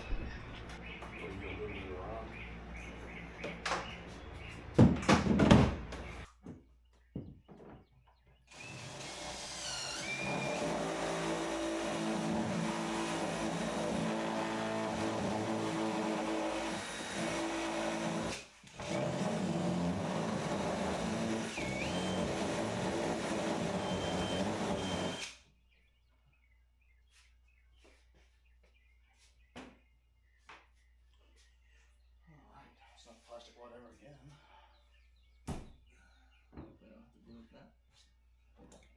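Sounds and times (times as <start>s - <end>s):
bird chirps: 0.0s - 4.8s
mechanical hum: 0.0s - 6.3s.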